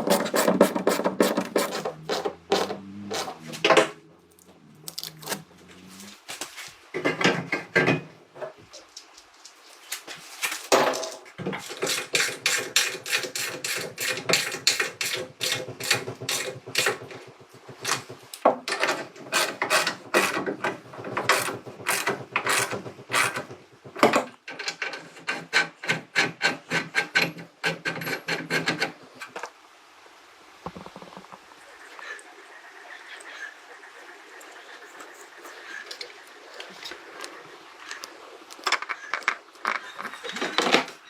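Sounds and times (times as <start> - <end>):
hand tool rasping strokes: 0.0 - 4.0, 11.7 - 17.0, 19.2 - 20.4, 21.2 - 23.5.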